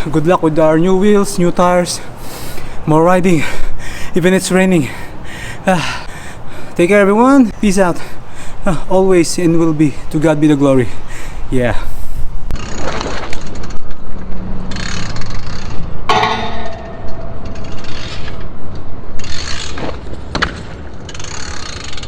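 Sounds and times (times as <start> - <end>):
low rumble: 16.0 - 19.2
sharp ringing knock: 16.1 - 18.0.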